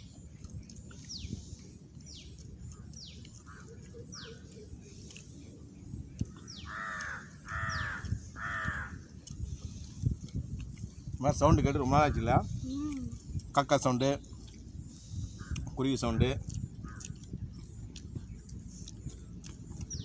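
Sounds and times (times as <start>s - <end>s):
crows cawing: 6.7s - 9.1s, 16.8s - 17.0s.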